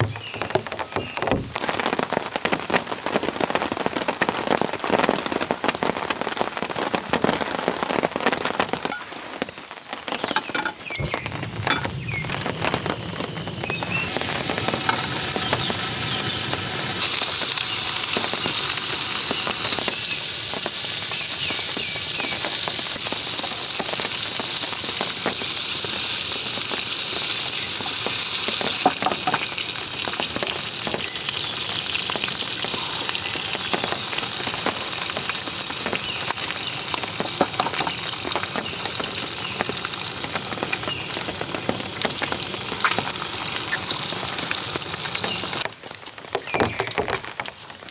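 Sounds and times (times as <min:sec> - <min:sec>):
bacon and eggs sizzling in a pan: 0:10.2 - 0:45.7.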